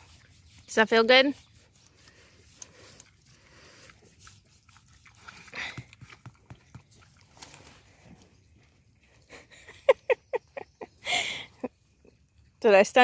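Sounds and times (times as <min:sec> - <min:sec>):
pig chewing: 0:00.0 - 0:00.7, 0:01.3 - 0:09.4, 0:11.8 - 0:12.6
pig snuffling: 0:00.0 - 0:10.6.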